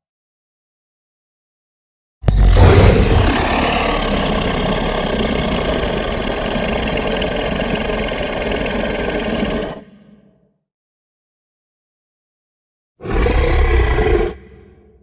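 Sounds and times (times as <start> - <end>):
rumbling monster roar: 2.2 - 10.3, 13.0 - 15.0.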